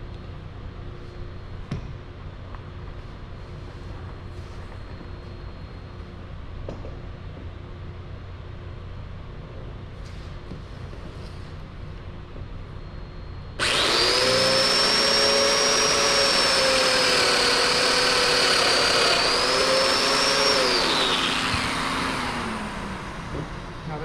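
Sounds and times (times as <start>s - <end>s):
power tool motor whining: 13.6s - 24.0s.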